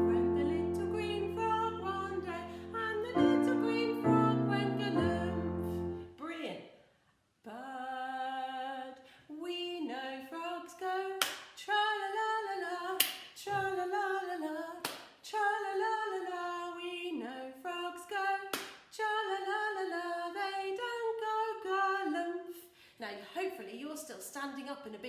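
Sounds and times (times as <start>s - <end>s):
person singing unaccompanied: 0.0s - 6.5s.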